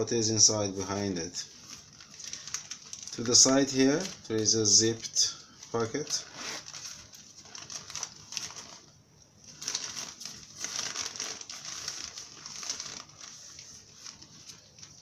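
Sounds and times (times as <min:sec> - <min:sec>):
fabric pouch rustling: 0:05.9 - 0:08.9, 0:09.5 - 0:15.0.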